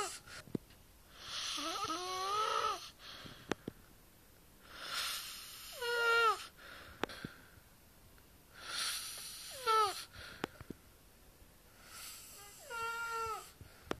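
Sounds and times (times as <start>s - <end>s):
person snoring with squeaky whine: 0.0s - 0.2s, 1.2s - 3.0s, 4.7s - 6.5s, 8.6s - 10.1s, 11.8s - 13.6s.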